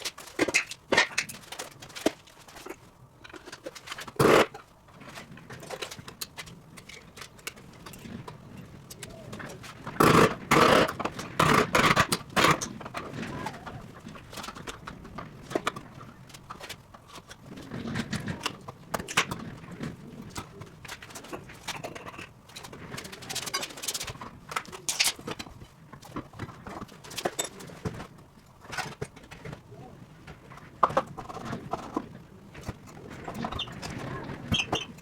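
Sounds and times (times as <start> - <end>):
knocks and clatter from hand work: 0.0 - 29.7.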